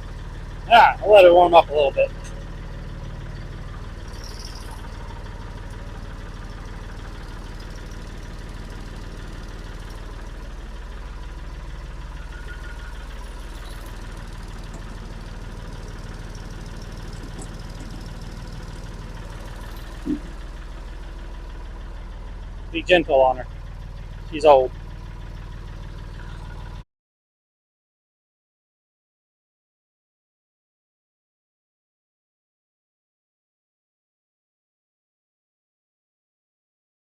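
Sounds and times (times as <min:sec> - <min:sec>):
engine knock: 0:00.0 - 0:26.8
old engine idling: 0:00.0 - 0:26.8.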